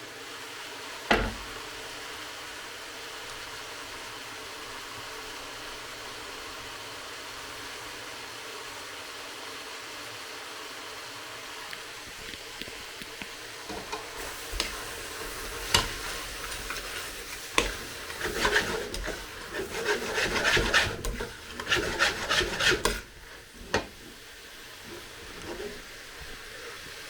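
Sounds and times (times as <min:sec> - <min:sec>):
utensil knocking on pan: 0:01.1 - 0:01.6, 0:13.7 - 0:14.8, 0:15.6 - 0:24.0
utensil scraping frying pan: 0:13.5 - 0:26.7.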